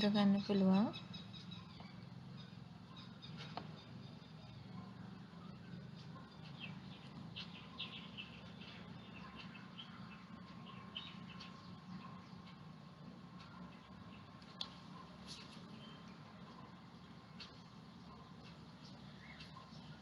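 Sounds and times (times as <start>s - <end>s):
faint bird chirps: 0.0s - 20.0s
low steady hum: 0.0s - 20.0s.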